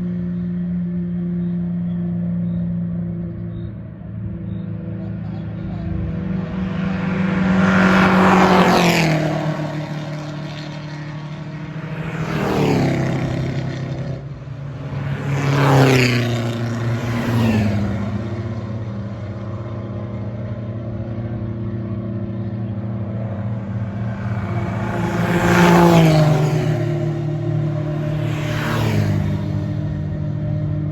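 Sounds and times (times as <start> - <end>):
cars passing at speed: 0.0 - 30.9
drone of engines: 0.0 - 30.9.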